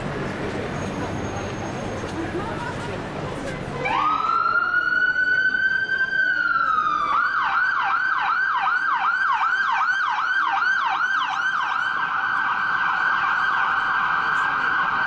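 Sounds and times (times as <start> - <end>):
emergency vehicle siren: 3.8 - 15.0.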